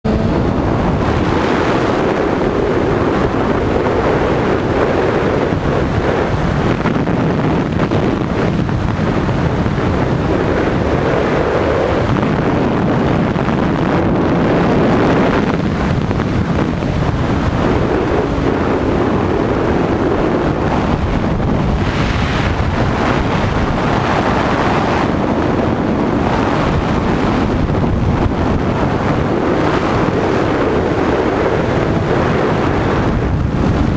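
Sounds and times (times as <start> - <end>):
wind buffeting microphone: 0.0 - 33.9.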